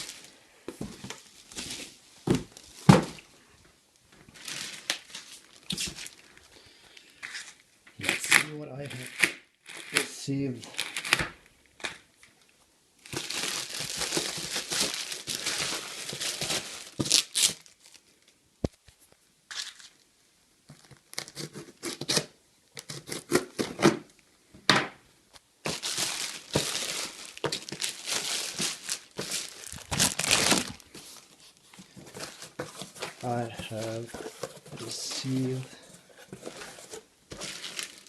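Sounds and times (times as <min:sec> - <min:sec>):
packing material tearing and crinkling: 0:04.4 - 0:06.3, 0:13.0 - 0:18.1, 0:25.7 - 0:35.6, 0:36.4 - 0:38.0.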